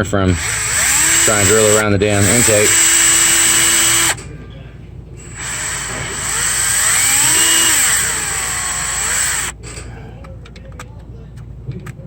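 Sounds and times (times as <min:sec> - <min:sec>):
power drill whining: 0:00.0 - 0:04.2, 0:05.2 - 0:09.7.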